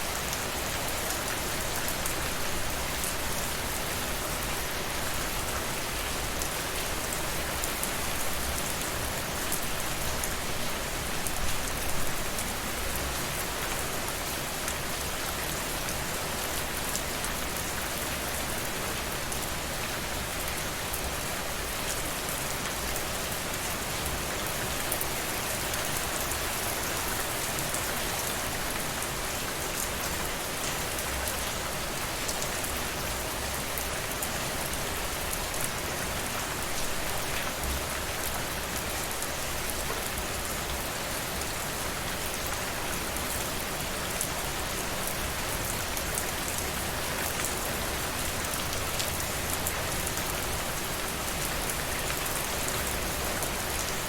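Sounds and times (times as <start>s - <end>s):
steady rain falling: 0.0s - 54.0s.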